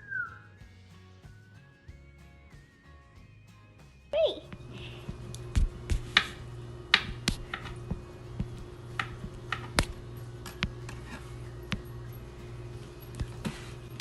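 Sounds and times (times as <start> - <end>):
steady low hum: 4.4 - 14.0
sharp taps and clicks: 6.9 - 10.8.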